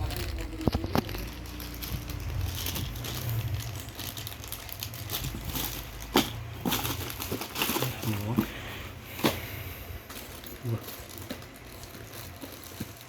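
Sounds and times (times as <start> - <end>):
small rattles: 0.0 - 8.5.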